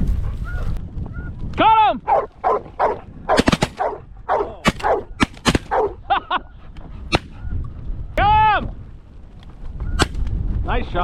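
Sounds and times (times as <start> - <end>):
shotgun blasts: 3.3 - 4.0, 4.6 - 5.9, 7.1 - 7.4, 10.0 - 10.3.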